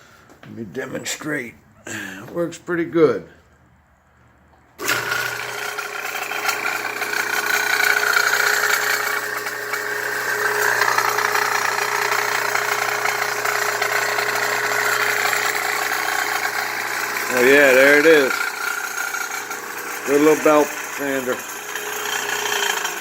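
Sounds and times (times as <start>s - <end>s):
belt sander motor humming: 4.8s - 23.0s
sander belt whirring and rattling: 4.8s - 23.0s.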